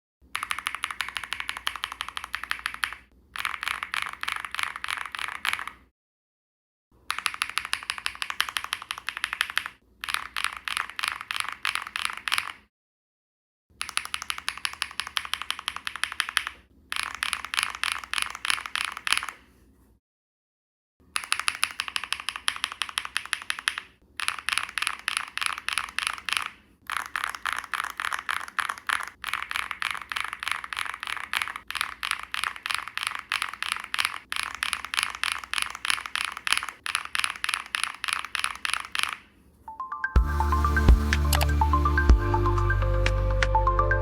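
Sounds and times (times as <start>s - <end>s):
mechanical keyboard typing: 0.3s - 5.9s, 7.0s - 12.7s, 13.8s - 19.4s, 21.1s - 39.3s
music: 39.7s - 44.0s.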